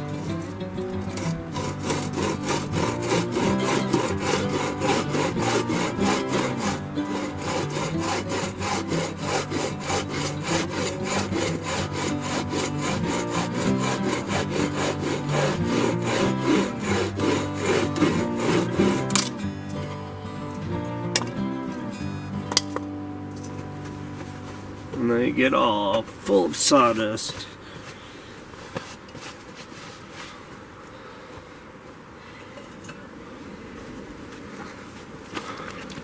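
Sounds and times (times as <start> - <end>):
hand saw cutting wood: 0.0 - 20.0.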